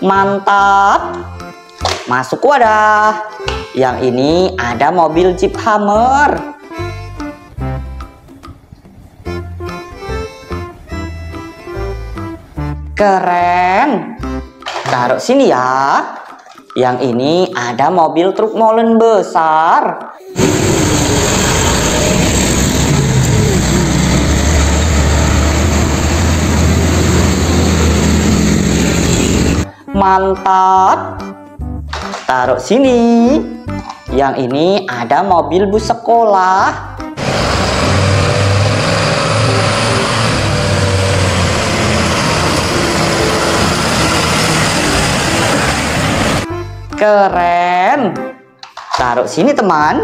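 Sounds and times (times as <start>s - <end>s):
broad rushing noise: 20.4s - 29.7s, 37.2s - 46.5s
vehicle engine running: 20.4s - 29.7s, 37.2s - 46.5s.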